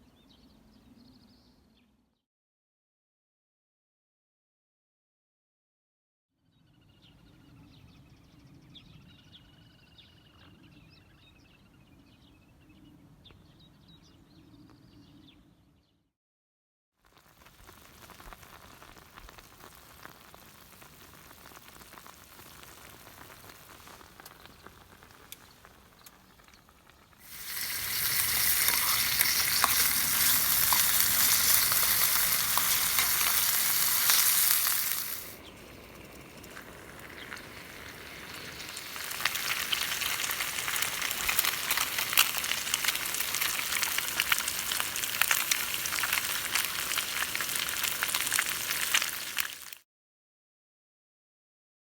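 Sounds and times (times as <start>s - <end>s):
food sizzling in a pan: 17.0s - 49.8s.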